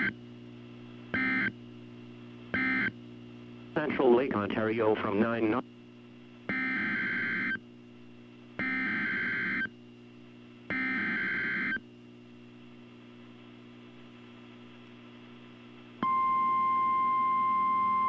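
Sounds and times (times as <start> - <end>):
faint steady hum: 0.0 - 18.0
buzzing data tone bursts: 1.1 - 1.6, 2.5 - 3.0, 6.5 - 7.6, 8.6 - 9.7, 10.7 - 11.8.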